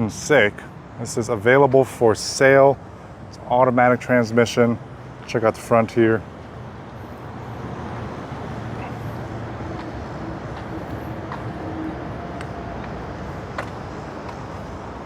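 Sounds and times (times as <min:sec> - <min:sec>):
low vehicle rumble: 0:06.8 - 0:15.0.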